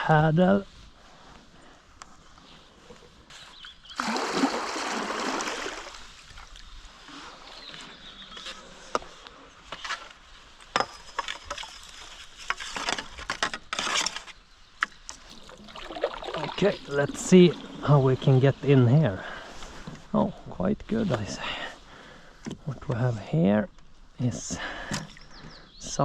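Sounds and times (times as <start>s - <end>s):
paddle splashing water: 4.0s - 6.7s, 15.1s - 18.3s.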